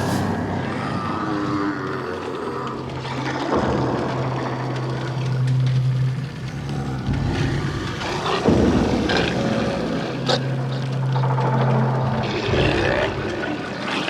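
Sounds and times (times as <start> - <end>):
low hum: 0.0 - 13.6
rumbling drone: 0.0 - 14.0.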